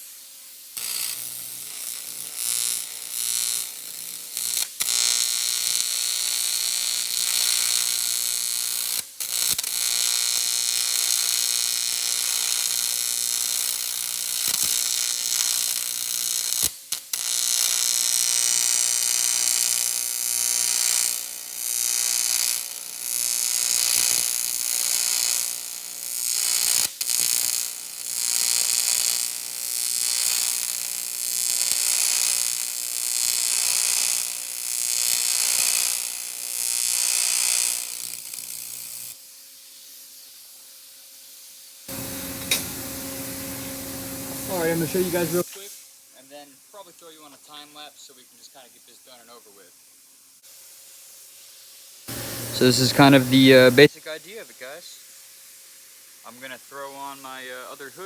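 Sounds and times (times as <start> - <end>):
welding arc buzzing: 0.0 - 39.2, 41.9 - 45.5, 52.1 - 53.9.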